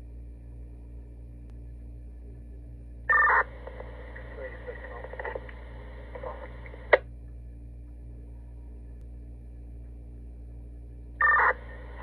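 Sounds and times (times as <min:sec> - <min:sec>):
radio channel hum and hiss: 0:00.0 - 0:12.0
radio squelch click: 0:03.3 - 0:07.0.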